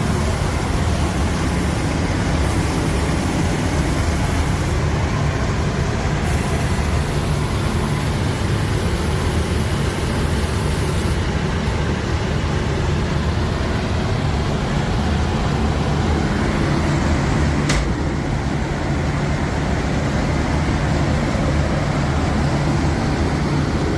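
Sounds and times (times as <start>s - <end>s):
factory machinery running: 0.0s - 23.9s
sharp click: 17.7s - 18.0s.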